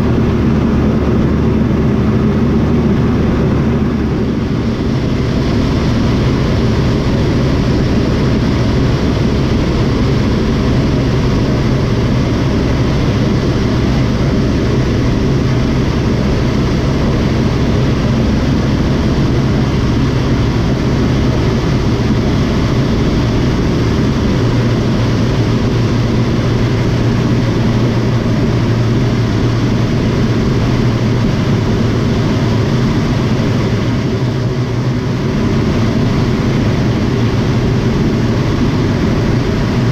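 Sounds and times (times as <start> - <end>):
light airplane engine and propeller: 0.0 - 39.9.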